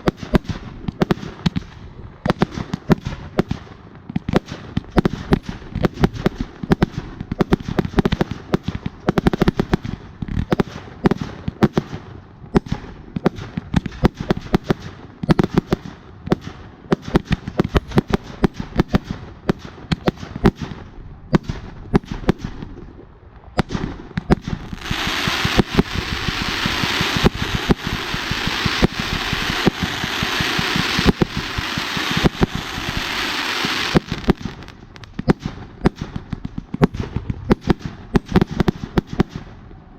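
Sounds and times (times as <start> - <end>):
fireworks crackling pops: 0.0 - 39.8
firework fountain hissing spray: 24.4 - 35.0.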